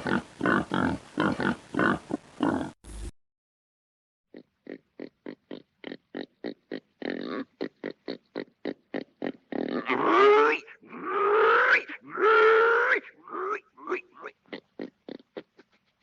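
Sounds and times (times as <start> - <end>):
pig grunting: 0.0 - 2.8, 4.3 - 15.7
pig call rising in pitch: 9.5 - 14.3.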